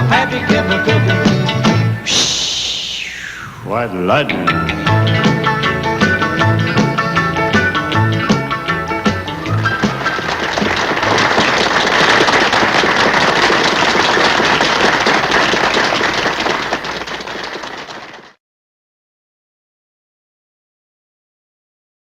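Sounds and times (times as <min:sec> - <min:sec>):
band last notes: 0:00.1 - 0:10.8
audience applause: 0:09.0 - 0:18.4.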